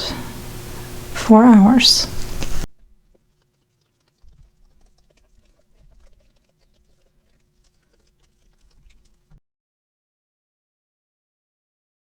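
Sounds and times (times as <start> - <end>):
low steady hum: 0.0 - 3.2.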